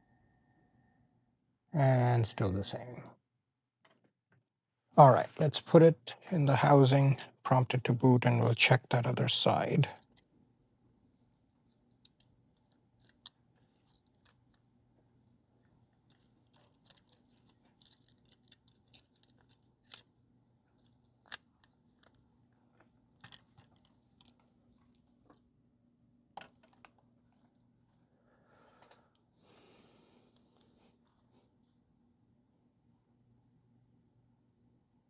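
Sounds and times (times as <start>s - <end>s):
faint low hum: 0.0s - 3.2s, 5.0s - 10.0s
small clicks of phone parts handled: 16.1s - 20.1s.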